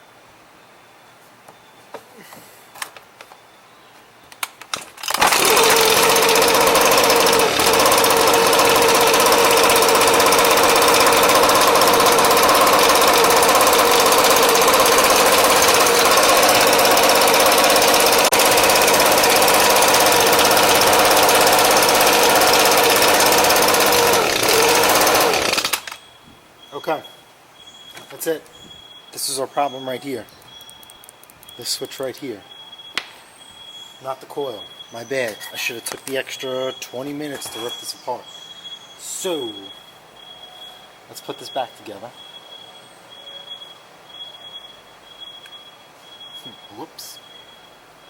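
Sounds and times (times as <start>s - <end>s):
small two-stroke engine running: 5.0s - 26.0s.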